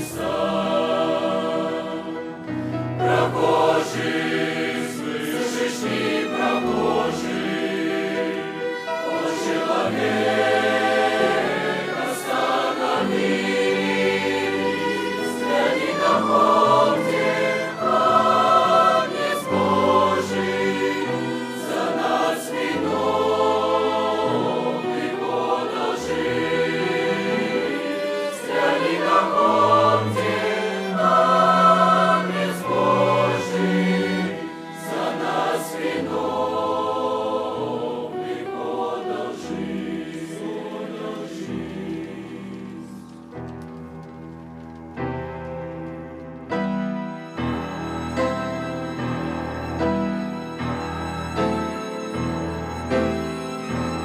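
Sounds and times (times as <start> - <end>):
youth choir singing a hymn: 0.0 - 43.2.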